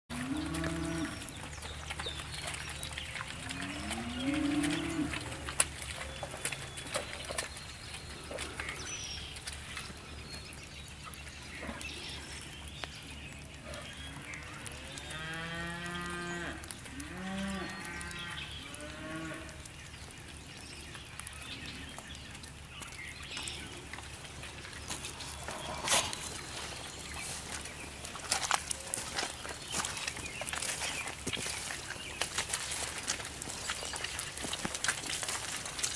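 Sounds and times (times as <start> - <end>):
cattle mooing: 3.4 - 5.4.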